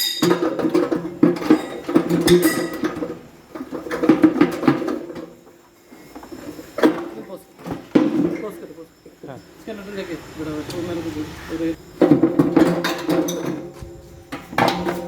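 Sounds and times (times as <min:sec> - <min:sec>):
metallic clanks and knocks: 0:00.0 - 0:05.6, 0:12.0 - 0:15.0.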